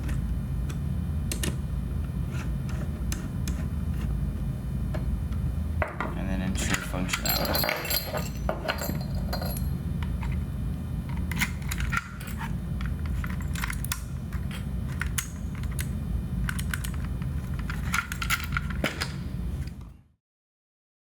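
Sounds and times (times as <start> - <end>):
steady low hum: 0.0 - 20.0
keys jangling: 7.1 - 9.8.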